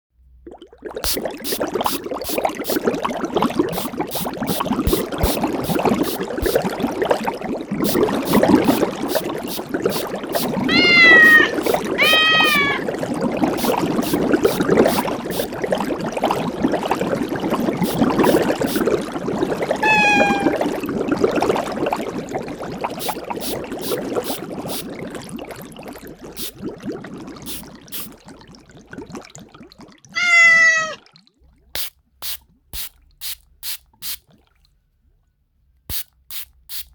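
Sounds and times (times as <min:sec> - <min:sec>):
crackling bubbling noise: 0:00.4 - 0:33.1
short hissing bursts: 0:01.0 - 0:02.9, 0:03.7 - 0:06.6, 0:07.8 - 0:12.8, 0:13.6 - 0:15.6, 0:17.8 - 0:18.8, 0:23.0 - 0:24.9, 0:27.5 - 0:28.2, 0:31.8 - 0:34.2, 0:35.9 - 0:36.9
loud drawn-out pitched cry: 0:10.6 - 0:12.8, 0:19.8 - 0:20.6, 0:30.2 - 0:31.0
short animal calls: 0:10.7 - 0:12.8, 0:19.8 - 0:20.6, 0:30.2 - 0:31.0.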